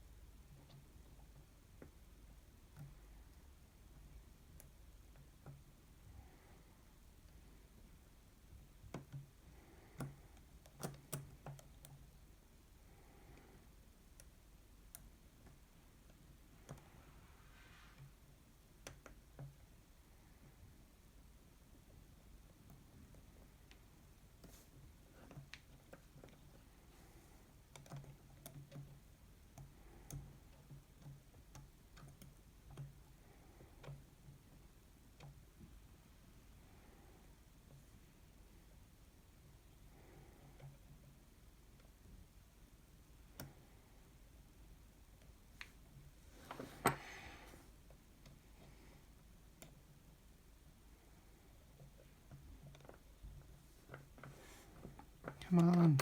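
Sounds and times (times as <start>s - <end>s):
faint lock pick clicks: 8.9s - 12.1s, 25.2s - 34.5s.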